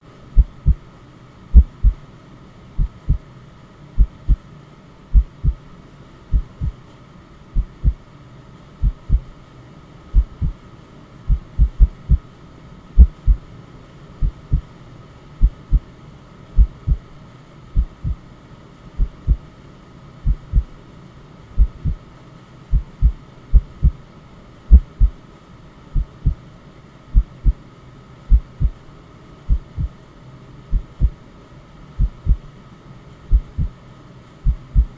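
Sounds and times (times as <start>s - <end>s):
faint steady noise: 0.0s - 34.9s
heartbeat thumps: 0.4s - 0.8s, 1.5s - 2.0s, 2.8s - 3.2s, 4.0s - 4.4s, 5.1s - 5.6s, 6.3s - 6.8s, 7.6s - 8.0s, 8.8s - 9.3s, 10.2s - 10.6s, 11.3s - 12.2s, 13.0s - 13.4s, 14.2s - 14.7s, 15.4s - 15.9s, 16.6s - 17.0s, 17.8s - 18.2s, 19.0s - 19.4s, 20.2s - 20.8s, 21.6s - 22.0s, 22.7s - 24.0s, 24.7s - 25.2s, 26.0s - 26.4s, 27.2s - 27.6s, 28.3s - 28.8s, 29.5s - 30.0s, 30.7s - 31.2s, 32.0s - 32.5s, 33.3s - 33.8s, 34.4s - 34.9s.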